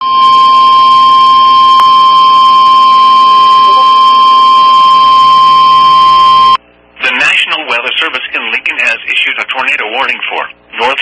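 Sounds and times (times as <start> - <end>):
steady alarm tone: 0.0 - 6.6.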